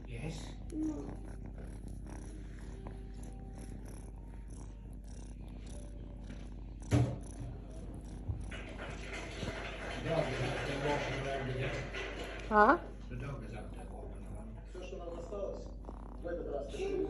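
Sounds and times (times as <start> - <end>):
cat purring: 0.0 - 17.0
loud thump: 6.9 - 7.2.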